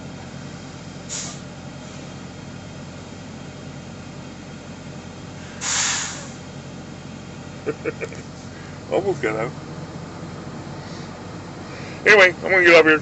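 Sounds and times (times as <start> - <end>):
diesel truck engine idling: 0.0 - 13.0
air brakes hissing: 1.0 - 2.2, 5.3 - 6.5, 10.7 - 12.1.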